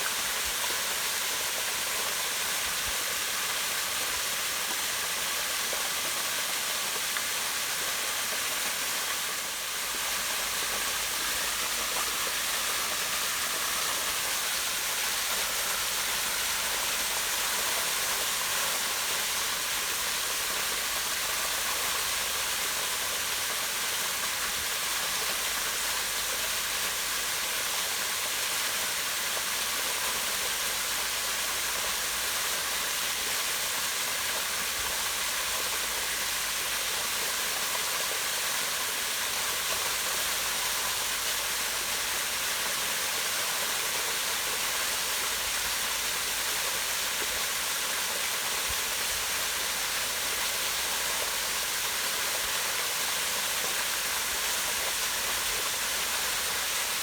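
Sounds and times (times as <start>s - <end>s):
waterfall splashing into pond: 0.0s - 57.0s.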